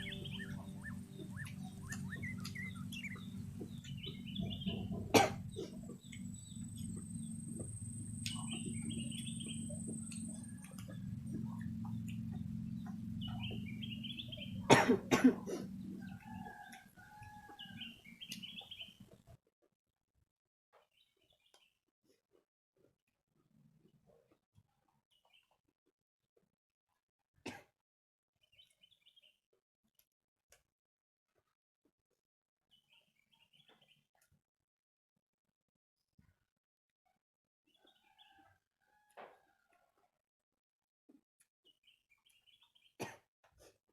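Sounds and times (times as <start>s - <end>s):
low hum: 0.0s - 16.2s
birds chirping: 0.0s - 19.1s.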